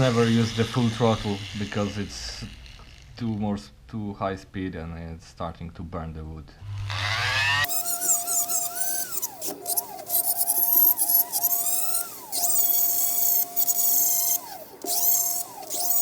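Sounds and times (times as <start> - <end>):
flex shaft grinder whining: 0.0 - 3.3, 6.6 - 16.0.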